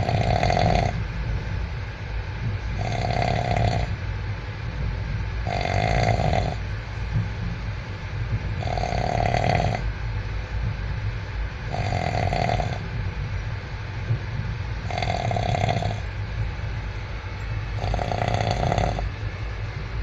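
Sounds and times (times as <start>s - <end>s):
person snoring: 0.0s - 1.0s, 2.8s - 3.9s, 5.5s - 6.6s, 8.6s - 9.8s, 11.7s - 12.8s, 14.9s - 16.0s, 17.8s - 19.0s
steady low rumble: 0.0s - 20.0s.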